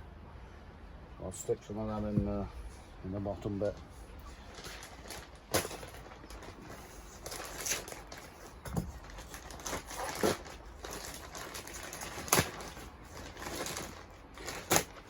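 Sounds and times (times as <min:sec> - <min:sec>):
pack rustling: 0:03.7 - 0:15.0.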